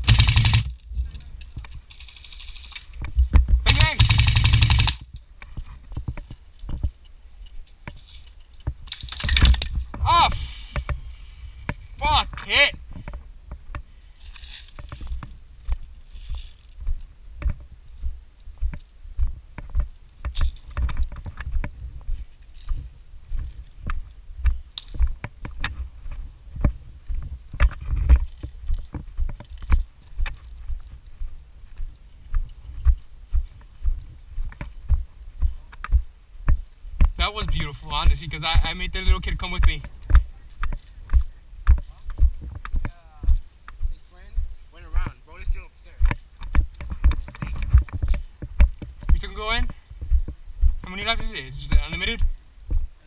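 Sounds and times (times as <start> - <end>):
airsoft guns firing clicking shots: 0.0 - 0.8, 3.7 - 5.0, 9.0 - 9.7
footsteps and gear thumping: 0.1 - 10.1, 10.7 - 45.2, 46.0 - 52.9.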